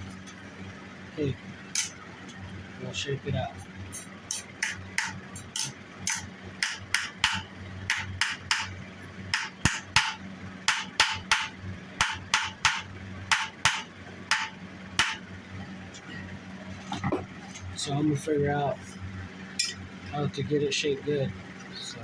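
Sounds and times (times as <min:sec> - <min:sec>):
hammer striking metal: 0:01.8 - 0:02.0, 0:04.3 - 0:08.7, 0:09.3 - 0:15.2, 0:19.6 - 0:19.8.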